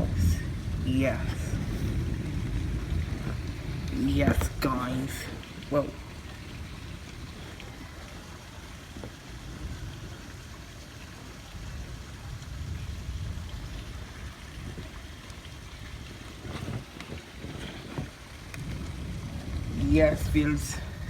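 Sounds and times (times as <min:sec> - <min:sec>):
low rumble: 0:00.0 - 0:08.8, 0:18.3 - 0:21.0
heavy rain pouring: 0:00.0 - 0:21.0.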